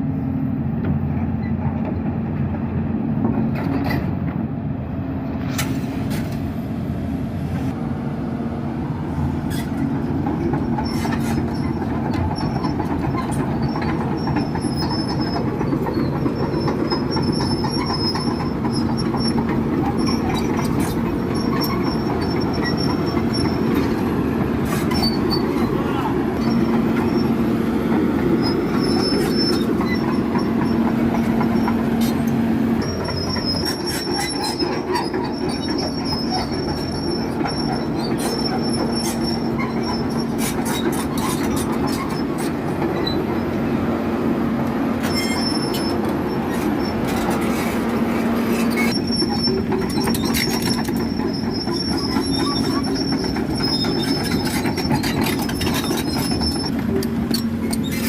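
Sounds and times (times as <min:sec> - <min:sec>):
heavy machinery humming: 0:00.2 - 0:58.0
high thin squeal: 0:45.0 - 0:56.7.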